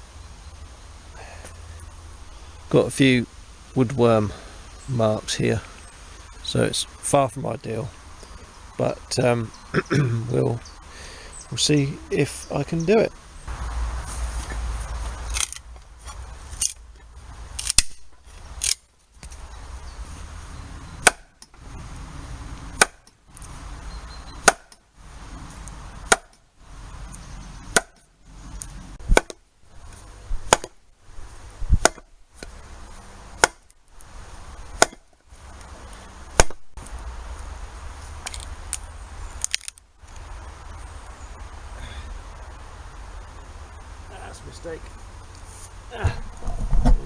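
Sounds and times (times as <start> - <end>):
axe blows splitting wood: 21.0 - 21.3, 22.8 - 23.0, 24.4 - 24.7, 26.1 - 26.3, 27.7 - 28.0, 29.1 - 29.4, 30.5 - 30.8, 31.8 - 32.1, 33.4 - 33.6, 34.8 - 35.0, 36.4 - 36.6.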